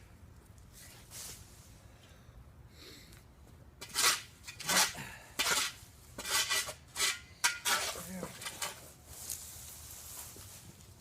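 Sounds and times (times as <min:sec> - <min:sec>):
shovel scraping concrete: 0:03.8 - 0:08.9.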